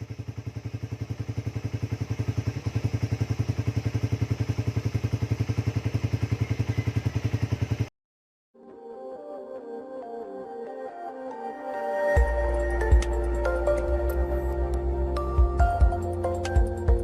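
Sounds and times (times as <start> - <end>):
motorcycle engine idling: 0.0 - 7.9, 12.2 - 17.0.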